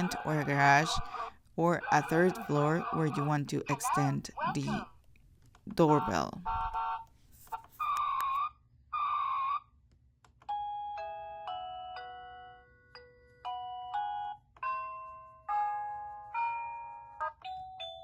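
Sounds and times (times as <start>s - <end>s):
bell-like chime melody: 10.5s - 18.0s.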